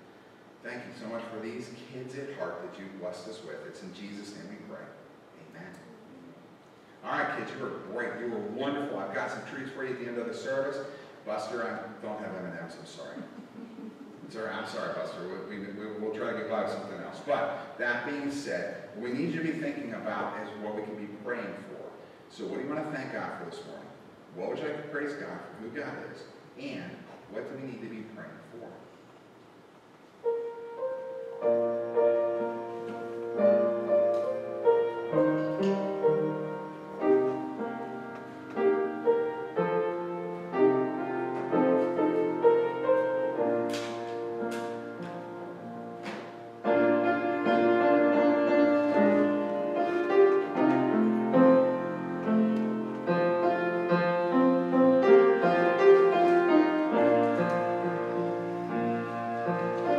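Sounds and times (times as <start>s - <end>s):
piano playing slow chords: 30.2s - 59.9s.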